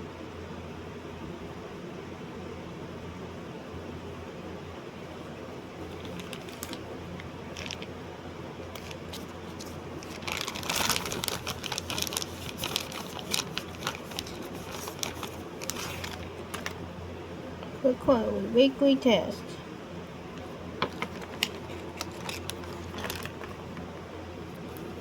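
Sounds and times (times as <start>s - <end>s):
steady low hum: 0.0s - 25.0s
rustling: 5.9s - 6.8s, 7.5s - 7.9s, 8.8s - 16.8s, 20.8s - 23.6s.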